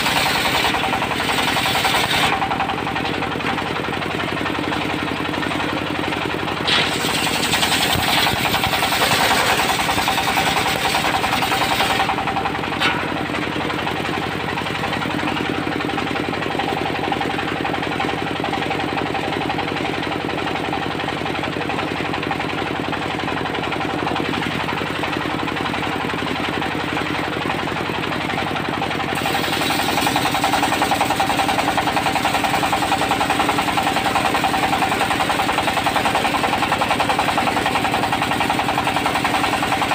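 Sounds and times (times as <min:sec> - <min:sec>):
diesel engine running with knock: 0:00.0 - 0:39.9.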